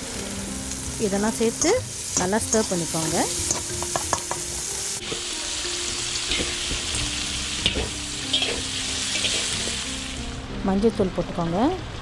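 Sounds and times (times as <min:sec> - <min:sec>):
vegetables sizzling in hot oil: 0:00.0 - 0:11.0
spoon clicking against pan: 0:03.5 - 0:04.5.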